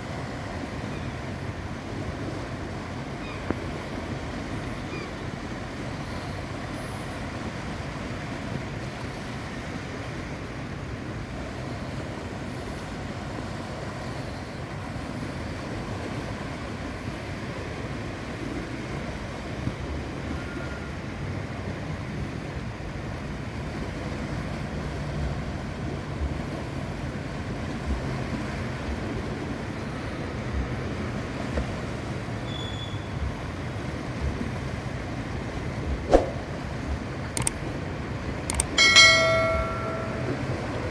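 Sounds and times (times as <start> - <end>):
sea surf rushing onto shore: 33.1 - 40.9
wind buffeting microphone: 33.2 - 40.9.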